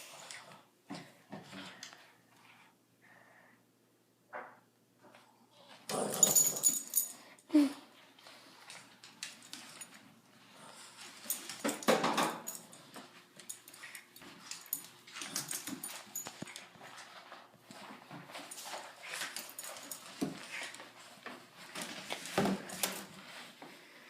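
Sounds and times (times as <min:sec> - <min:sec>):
dogs scuffling: 0:10.8 - 0:23.7
dogs play-fighting: 0:12.5 - 0:23.4.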